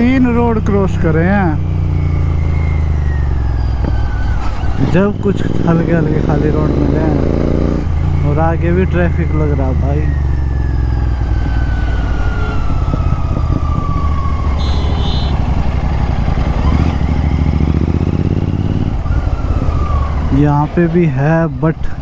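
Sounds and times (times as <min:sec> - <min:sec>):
motorcycle engine running: 0:00.0 - 0:22.0
brief high beeping: 0:14.6 - 0:15.4.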